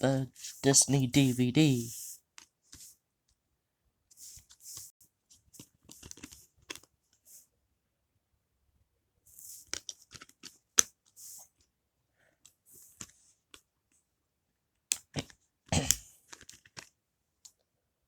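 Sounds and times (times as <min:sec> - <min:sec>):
paper rustling: 0:04.2 - 0:06.9.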